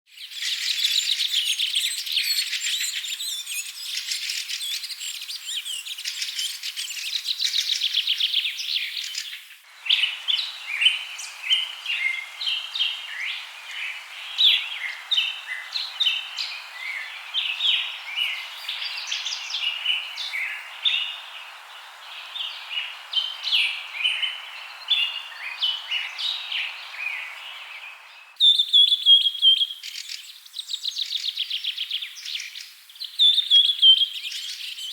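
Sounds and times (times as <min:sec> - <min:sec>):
songbirds chirping and singing: 0:00.2 - 0:28.4
soft background hiss: 0:07.0 - 0:31.4.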